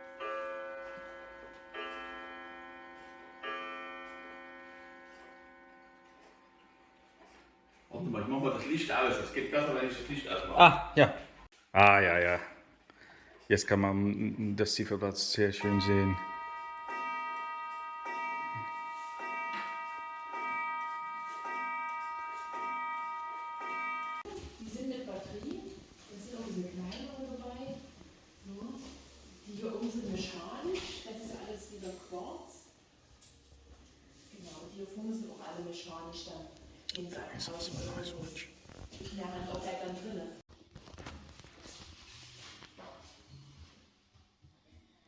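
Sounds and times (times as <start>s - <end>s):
clock chime striking: 0.0s - 10.2s, 15.6s - 24.3s
bell-like electronic chord: 15.6s - 24.2s.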